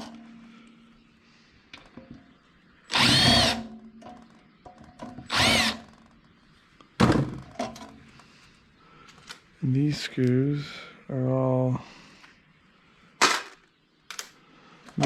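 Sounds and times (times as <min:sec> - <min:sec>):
cordless drill whirring: 0:02.9 - 0:03.7, 0:05.3 - 0:06.0.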